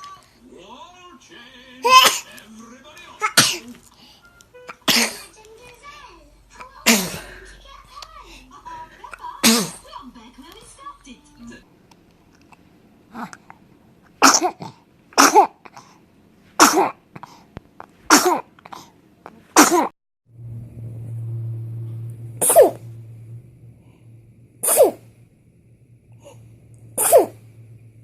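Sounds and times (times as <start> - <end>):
baby sneezing: 1.8 - 2.3, 3.2 - 3.8, 4.7 - 5.4, 6.8 - 7.2, 9.4 - 9.8, 14.2 - 15.8, 16.6 - 17.4, 18.1 - 18.9, 19.5 - 19.9, 22.4 - 22.8, 24.6 - 25.0, 27.0 - 27.4
steady low hum: 20.3 - 28.0.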